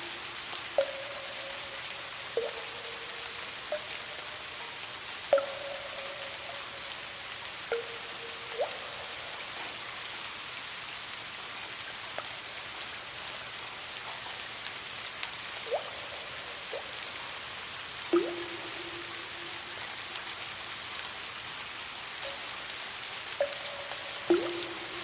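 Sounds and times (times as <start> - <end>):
water drops plinking into water: 0.0 - 9.8, 15.6 - 17.2, 18.1 - 20.6, 22.2 - 22.6, 23.3 - 25.0
soft rain hiss: 0.0 - 25.0.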